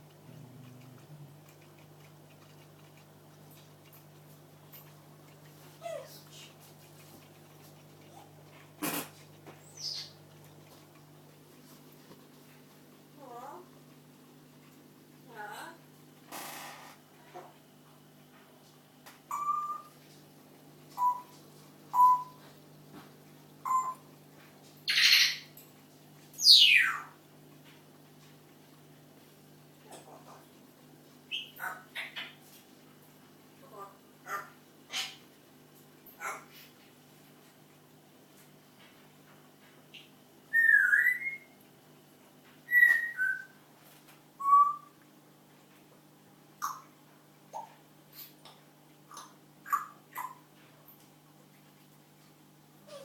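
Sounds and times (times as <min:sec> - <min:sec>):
parrot whistling: 0:19.3 - 0:19.9, 0:21.0 - 0:21.3, 0:21.9 - 0:22.4, 0:23.6 - 0:24.0, 0:40.5 - 0:41.6, 0:42.7 - 0:43.6, 0:44.4 - 0:44.9
parrot screeching: 0:24.9 - 0:25.5.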